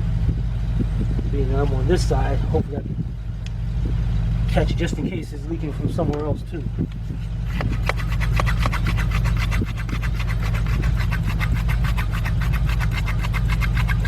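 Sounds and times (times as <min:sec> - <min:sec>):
machine humming with fast ticking: 0:02.9 - 0:14.0.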